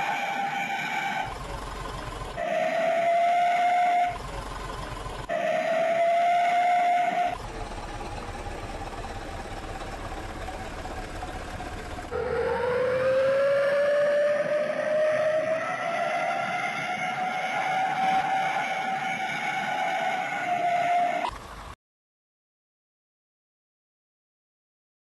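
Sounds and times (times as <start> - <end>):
bus exhaust whistle howling: 0.0 - 1.4, 2.4 - 4.2, 5.2 - 7.4, 12.1 - 21.3
bus engine running: 0.0 - 21.8.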